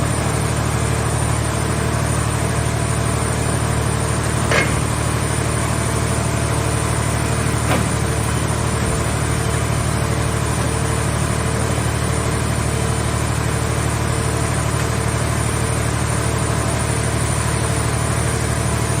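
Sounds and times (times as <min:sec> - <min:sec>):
baler machine hum with pulse: 0:00.0 - 0:19.0
single knock: 0:04.5 - 0:05.0.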